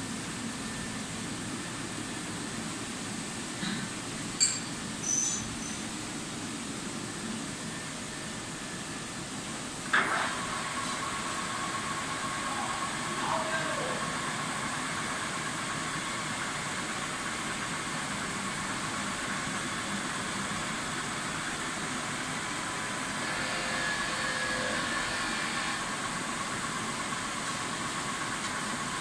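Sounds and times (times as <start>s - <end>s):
machining centre hum and hiss: 0.0s - 29.0s
high machine whine: 6.8s - 29.0s.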